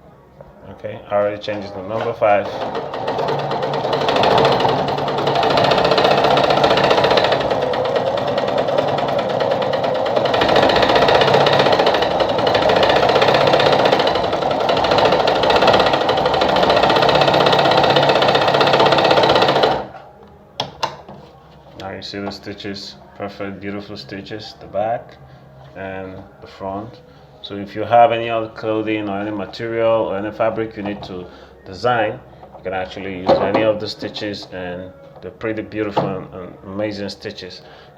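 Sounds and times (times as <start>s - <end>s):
sewing machine running: 1.9s - 19.9s.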